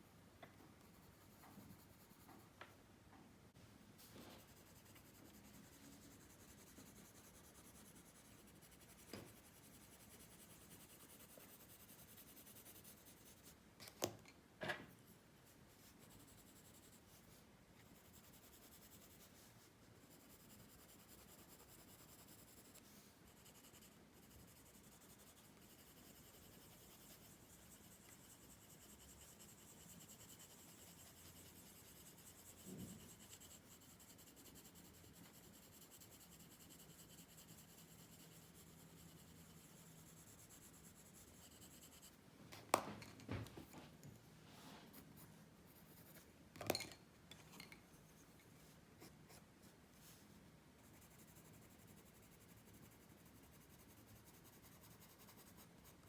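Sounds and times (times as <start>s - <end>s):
pencil scratching on paper: 4.0s - 13.6s, 15.7s - 42.2s, 50.8s - 56.0s.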